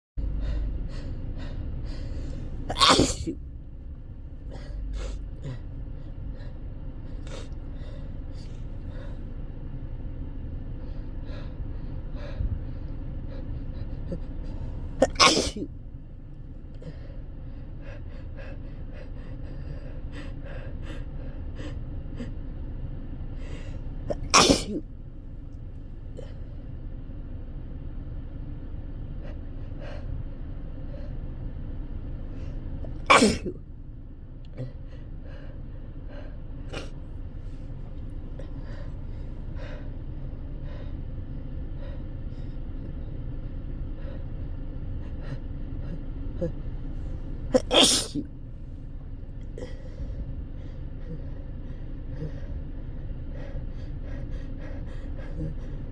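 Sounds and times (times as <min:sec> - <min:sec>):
low background hum: 0:00.2 - 0:55.9
person sneezing: 0:02.6 - 0:03.4, 0:14.9 - 0:15.7, 0:24.1 - 0:24.8, 0:32.9 - 0:33.6, 0:47.5 - 0:48.3.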